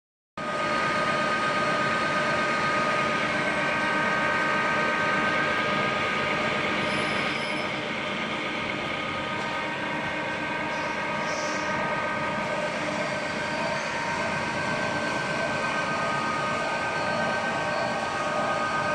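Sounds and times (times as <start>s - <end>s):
metal lathe whining: 9.1s - 18.9s.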